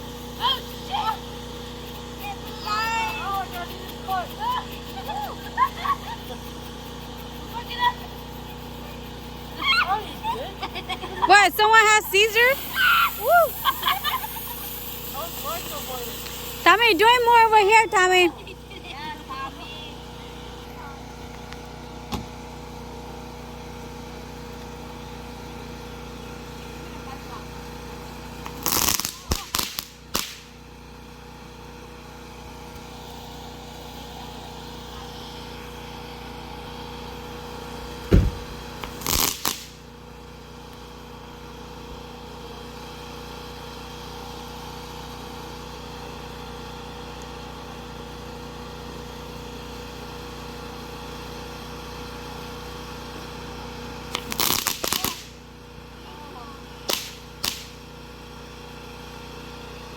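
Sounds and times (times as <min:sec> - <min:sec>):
steady background hum: 0:00.0 - 0:41.9
firecrackers banging and crackling: 0:11.4 - 0:18.3, 0:28.3 - 0:30.6, 0:38.2 - 0:39.8, 0:54.1 - 0:55.4, 0:56.9 - 0:57.8.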